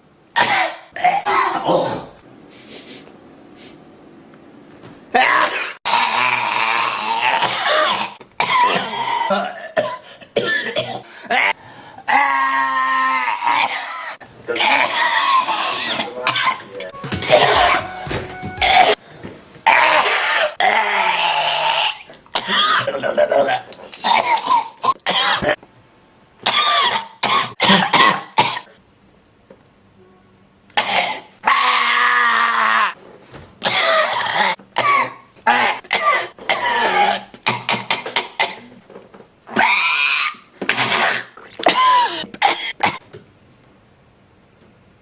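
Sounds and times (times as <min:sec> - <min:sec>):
man coughing hard: 0:00.4 - 0:02.1, 0:07.4 - 0:11.6, 0:17.2 - 0:17.8, 0:18.6 - 0:19.0, 0:26.5 - 0:28.7, 0:33.6 - 0:38.7, 0:41.6 - 0:43.0.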